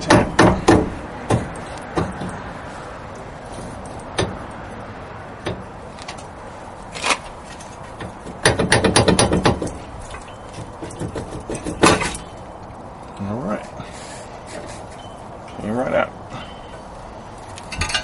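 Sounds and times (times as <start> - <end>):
hammer tapping on metal hub: 8.0 - 9.8.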